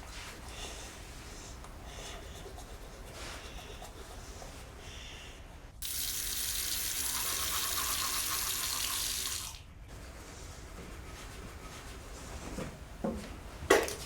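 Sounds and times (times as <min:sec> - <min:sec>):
tap water running into sink: 0:05.8 - 0:09.6.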